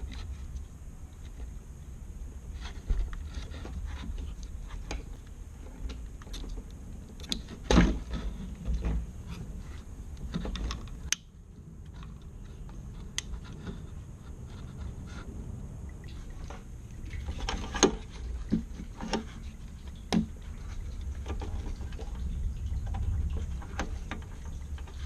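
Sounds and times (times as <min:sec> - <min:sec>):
low rumble: 0:11.0 - 0:18.9, 0:19.5 - 0:25.0.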